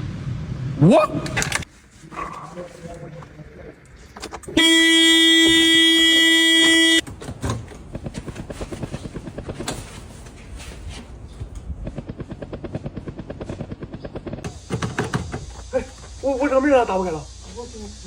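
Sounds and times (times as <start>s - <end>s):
car horn blast: 4.6s - 7.0s.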